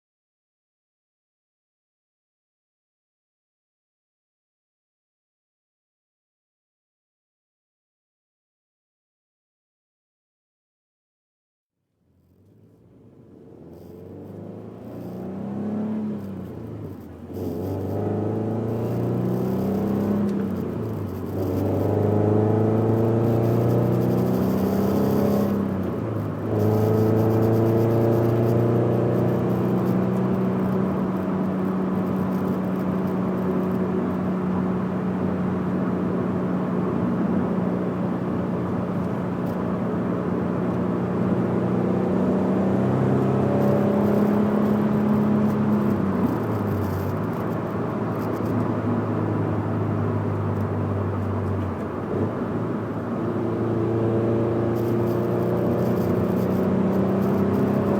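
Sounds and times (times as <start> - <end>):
car engine accelerating: 12.2 - 57.9.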